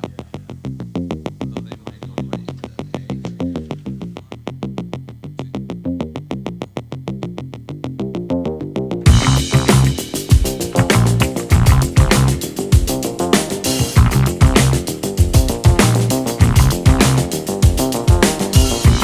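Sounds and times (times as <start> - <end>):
electronic music beat: 9.1 - 19.0
fast synthesizer notes: 9.1 - 19.0.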